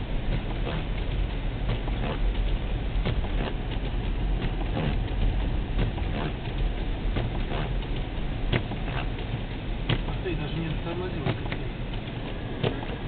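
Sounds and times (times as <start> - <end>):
road rumble: 0.0 - 13.0
snow and slush striking car: 0.0 - 13.0.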